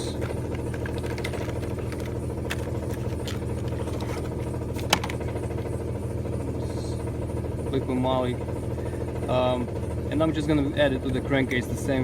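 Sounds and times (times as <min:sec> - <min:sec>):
car engine idling with knock: 0:00.0 - 0:06.4.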